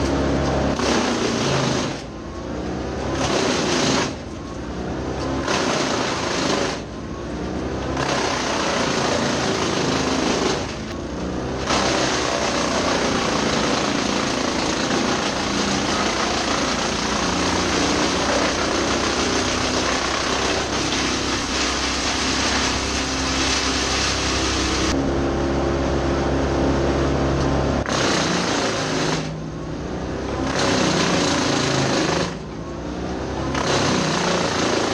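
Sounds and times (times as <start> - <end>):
tractor engine and chipper running: 0.0 - 34.9
wood chipping noise: 7.8 - 11.0, 11.6 - 25.0, 27.8 - 29.3, 33.5 - 34.9.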